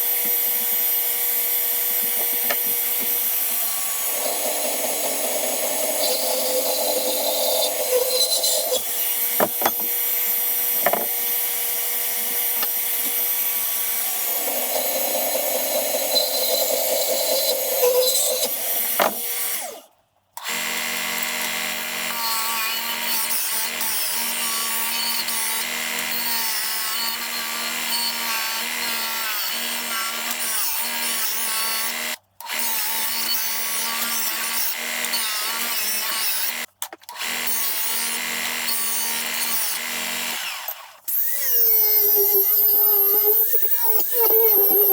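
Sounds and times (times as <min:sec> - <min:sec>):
power tool running: 0:00.0 - 0:19.8, 0:33.5 - 0:44.9
different power tool running: 0:00.0 - 0:32.2, 0:33.2 - 0:44.9
sharp knocks: 0:09.4 - 0:10.0, 0:10.8 - 0:11.2.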